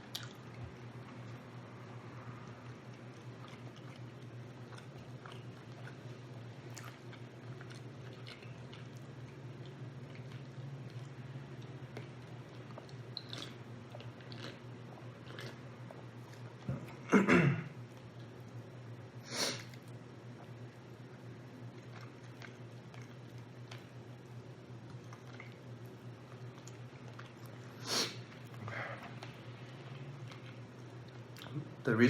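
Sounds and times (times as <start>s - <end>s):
person chewing food: 0.0s - 1.4s, 2.6s - 17.0s, 21.7s - 24.0s, 24.8s - 29.4s, 30.0s - 31.6s
steady low hum: 0.0s - 32.0s.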